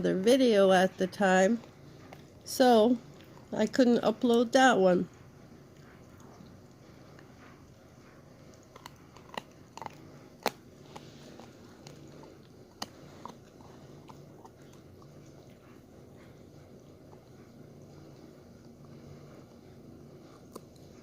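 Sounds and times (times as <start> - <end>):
dog crunching bones: 1.6 - 3.6, 5.8 - 17.6.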